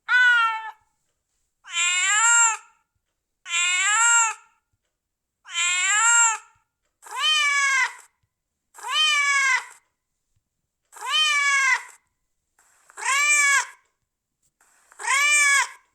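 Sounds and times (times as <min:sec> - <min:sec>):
cat meowing: 0:00.1 - 0:00.8, 0:01.7 - 0:02.7, 0:03.5 - 0:04.4, 0:05.5 - 0:08.0, 0:08.8 - 0:09.8, 0:11.0 - 0:12.0, 0:13.0 - 0:13.8, 0:15.0 - 0:15.8.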